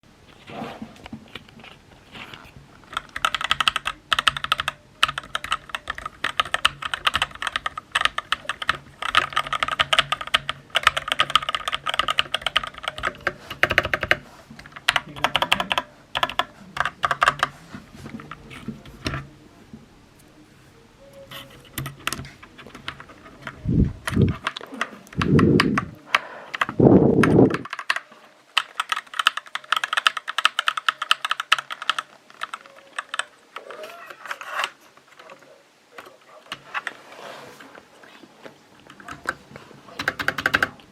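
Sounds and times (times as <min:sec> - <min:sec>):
mechanical keyboard typing: 0:02.8 - 0:17.6, 0:21.3 - 0:35.4, 0:38.8 - 0:40.9.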